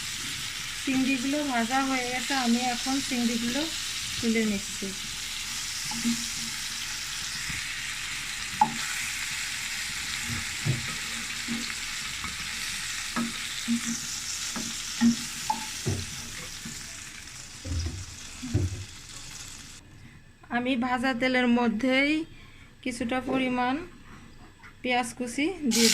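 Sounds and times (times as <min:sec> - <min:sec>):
prawns sizzling in hot oil: 0:00.0 - 0:19.8.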